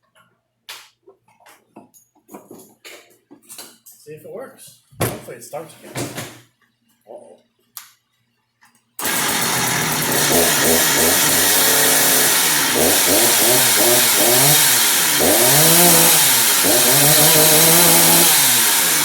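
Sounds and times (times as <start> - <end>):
chainsaw engine revving: 9.0 - 19.0.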